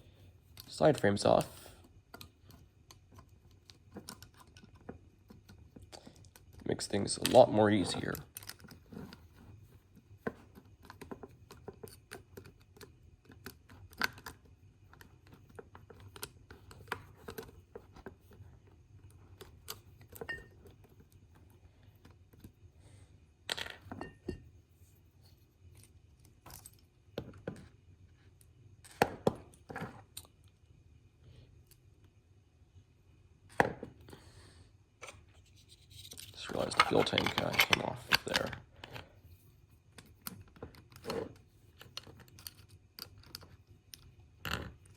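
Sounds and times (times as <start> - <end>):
plastic parts clicking and tapping: 2.1 - 22.6, 36.0 - 39.1.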